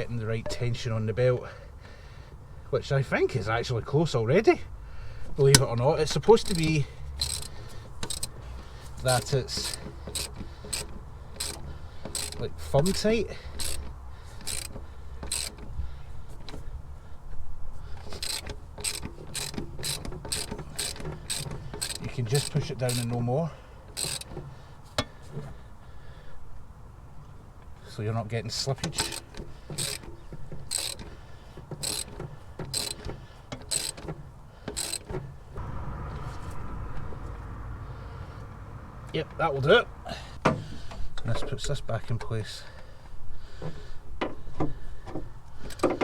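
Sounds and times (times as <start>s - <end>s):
ratchet wrench clicking: 6.4s - 15.8s, 18.0s - 23.2s, 23.9s - 24.4s, 28.9s - 31.2s, 31.8s - 34.1s, 34.7s - 35.2s
low hum: 35.6s - 40.2s.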